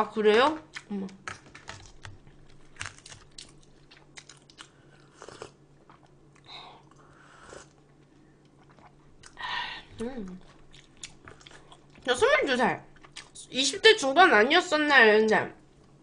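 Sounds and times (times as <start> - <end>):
chewing crunchy food: 0.6 - 9.4, 10.0 - 12.1, 12.9 - 13.5.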